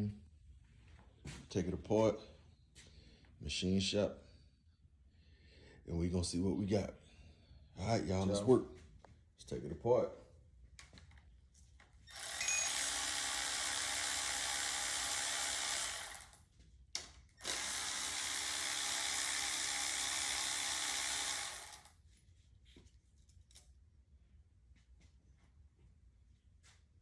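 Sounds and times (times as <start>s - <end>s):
handheld power tool running: 12.1s - 16.4s, 17.4s - 22.0s.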